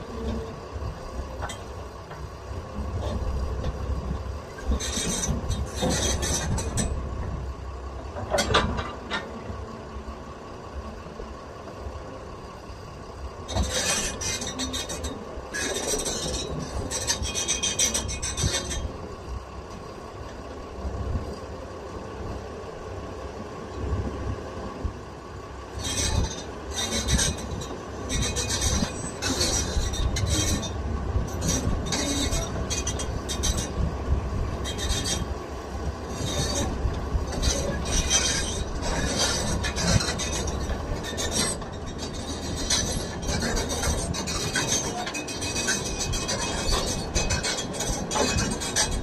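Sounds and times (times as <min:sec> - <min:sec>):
excavator engine rumble: 0:00.0 - 0:49.0
metallic squealing and scraping: 0:04.7 - 0:06.9, 0:13.5 - 0:18.9, 0:25.8 - 0:33.9, 0:34.6 - 0:35.3, 0:36.1 - 0:49.0.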